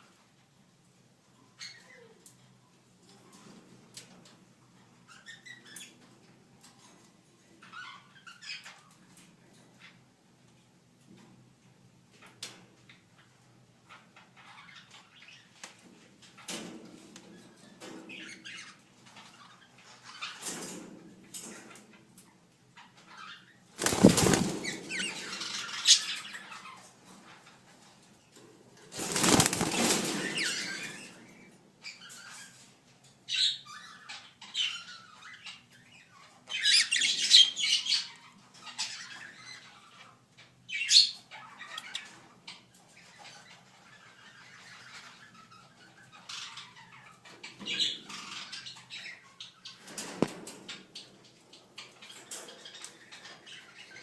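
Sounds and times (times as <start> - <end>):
parrots flapping wings: 23.8 - 25.1, 28.9 - 31.0.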